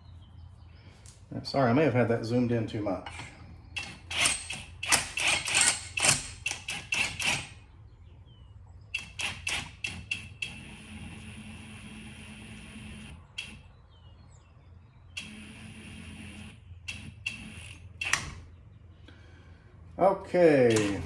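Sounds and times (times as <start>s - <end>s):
metal hand tools clinking: 4.1s - 7.4s.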